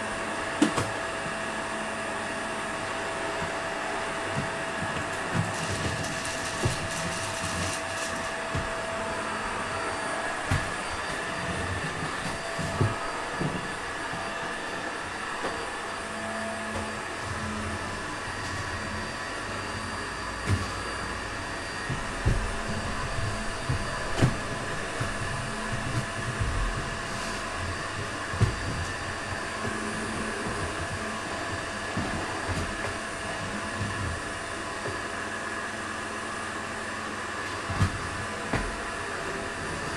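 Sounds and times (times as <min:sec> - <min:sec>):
vacuum cleaner running: 0:00.0 - 0:39.9
vacuum cleaner knocking on floor: 0:04.3 - 0:15.7, 0:20.4 - 0:35.1, 0:37.6 - 0:39.9.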